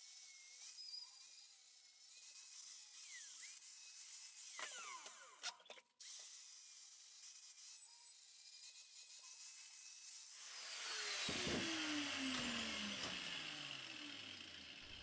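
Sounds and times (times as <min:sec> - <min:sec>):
angle grinder grinding steel: 0:10.2 - 0:15.0.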